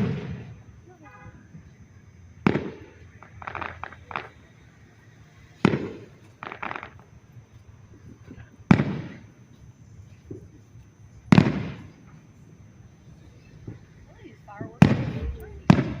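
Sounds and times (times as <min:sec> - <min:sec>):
firework booms: 0:00.0 - 0:00.7, 0:02.4 - 0:04.5, 0:05.6 - 0:07.1, 0:08.0 - 0:09.3, 0:11.3 - 0:12.0, 0:13.6 - 0:16.0
small firework pops: 0:02.4 - 0:04.6, 0:05.6 - 0:07.1, 0:08.1 - 0:09.2, 0:11.3 - 0:12.2, 0:14.8 - 0:16.0.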